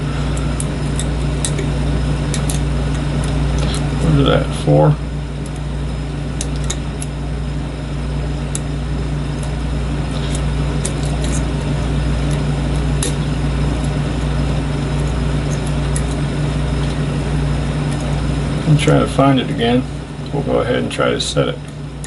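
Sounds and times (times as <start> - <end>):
low hum and hiss: 0.0 - 22.0.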